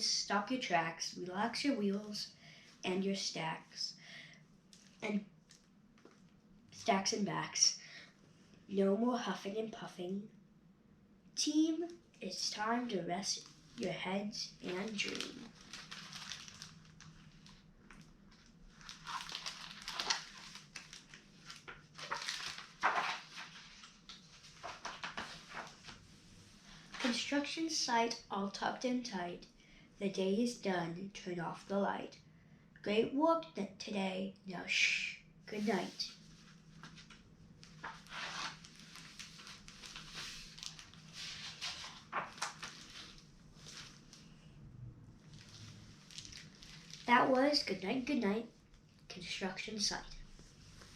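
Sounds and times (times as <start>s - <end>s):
faint low hum: 0.0s - 50.9s
soft rustling: 13.3s - 27.3s, 35.5s - 44.5s, 45.2s - 47.8s, 50.1s - 50.9s
book pages turning: 14.6s - 26.2s, 35.6s - 44.3s, 45.2s - 47.1s.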